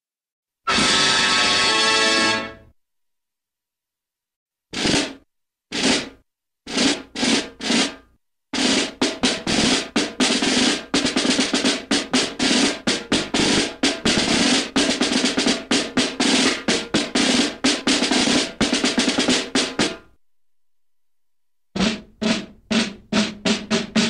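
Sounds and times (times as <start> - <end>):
snare drum roll: 4.8 - 20.1, 21.8 - 24.0.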